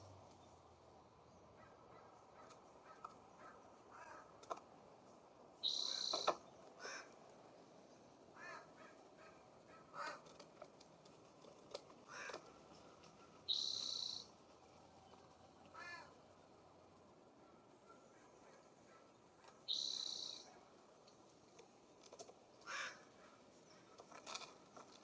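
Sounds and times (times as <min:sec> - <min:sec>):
high-pitched bird calls: 0:05.6 - 0:06.4, 0:13.2 - 0:14.3, 0:19.5 - 0:20.5
short soft bird calls: 0:05.6 - 0:07.1, 0:13.2 - 0:14.4, 0:17.4 - 0:20.6.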